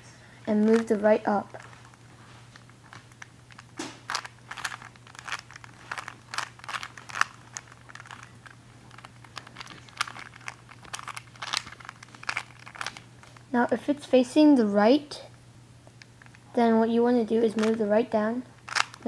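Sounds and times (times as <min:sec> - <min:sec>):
low steady hum: 0:00.0 - 0:19.0
plastic cube clicks and rattles: 0:02.6 - 0:13.0, 0:17.5 - 0:17.8, 0:18.6 - 0:19.0.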